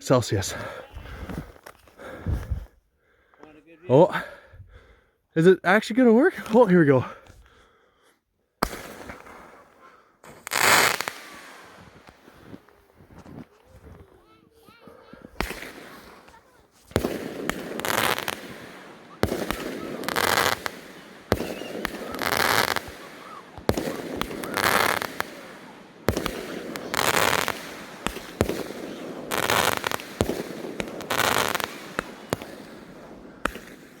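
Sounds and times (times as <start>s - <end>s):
firework bangs: 8.6s - 13.4s, 14.8s - 34.0s
hissing crackle: 8.8s - 14.1s, 15.4s - 34.0s.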